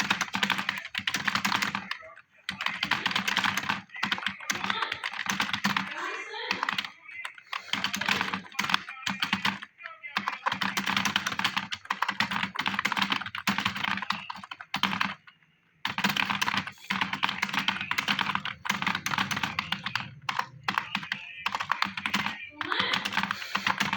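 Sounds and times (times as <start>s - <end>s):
fast typing on keyboard: 0.0s - 23.9s.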